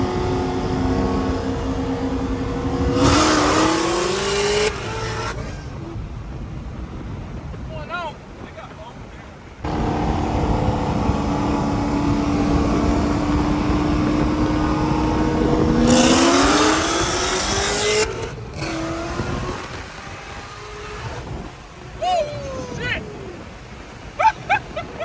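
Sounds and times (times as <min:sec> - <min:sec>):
car engine revving: 0:00.0 - 0:05.8, 0:09.6 - 0:21.9.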